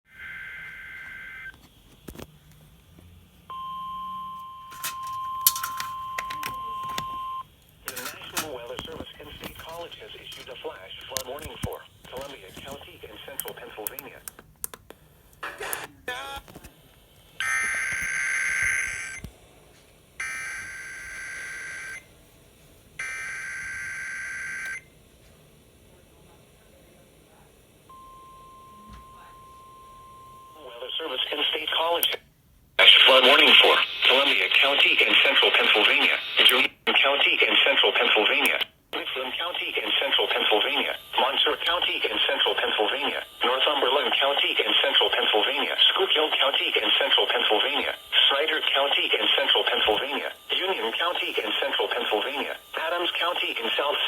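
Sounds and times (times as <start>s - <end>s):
steady warning alarm tone: 3.5s - 11.1s, 20.2s - 22.1s, 23.0s - 24.9s, 27.9s - 30.9s, 39.6s - 54.0s
clicks: 7.9s - 15.0s.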